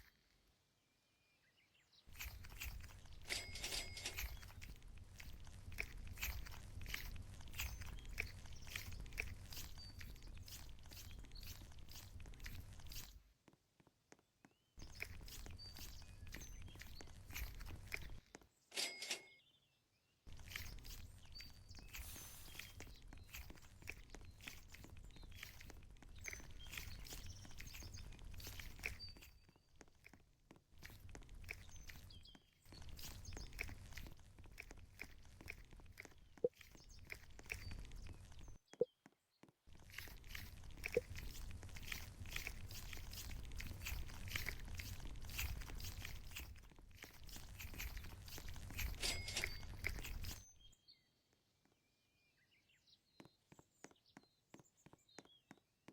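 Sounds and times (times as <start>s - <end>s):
foam toy squishing: 4.1s - 13.2s, 20.3s - 38.6s, 39.7s - 50.4s
foam toy crackling: 20.3s - 29.0s.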